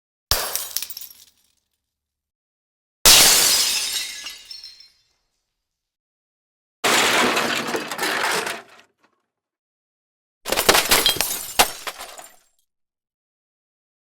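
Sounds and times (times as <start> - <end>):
crash and break: 6.8 - 9.0, 10.5 - 12.4
rattling clatters and cracks: 10.5 - 12.4.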